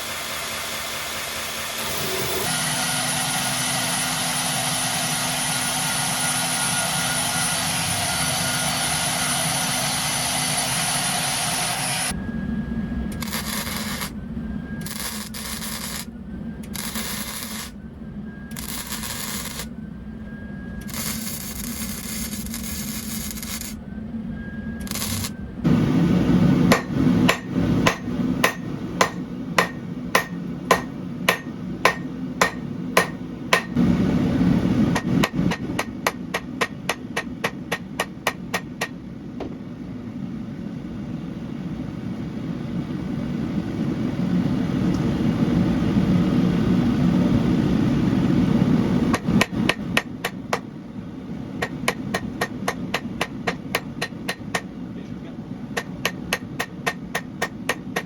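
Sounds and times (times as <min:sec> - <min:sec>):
hammer striking steel on anvil: 0:26.7 - 0:33.8, 0:35.0 - 0:39.0, 0:49.1 - 0:50.7, 0:51.6 - 0:54.7, 0:55.8 - 0:58.0.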